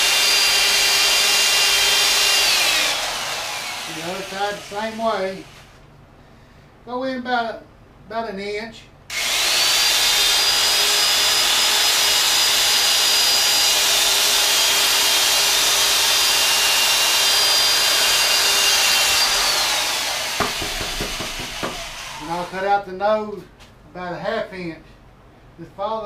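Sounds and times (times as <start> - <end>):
electric drill cutting foam: 0.0 - 5.8, 9.1 - 22.6.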